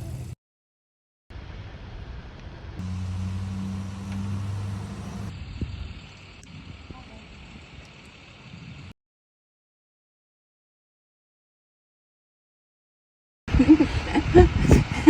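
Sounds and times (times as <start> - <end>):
engine humming: 2.8 - 8.8.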